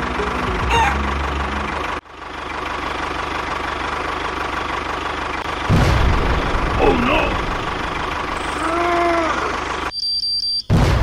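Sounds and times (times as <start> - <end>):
engine running: 0.0 - 9.9
loud low burst: 5.5 - 8.4.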